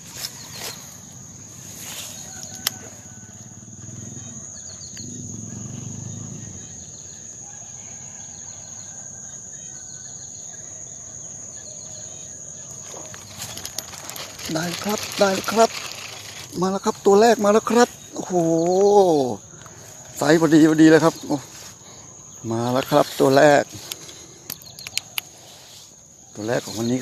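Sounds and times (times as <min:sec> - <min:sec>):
small birds chirping: 0:00.0 - 0:07.4, 0:08.2 - 0:27.0
sharp click: 0:23.9 - 0:25.3.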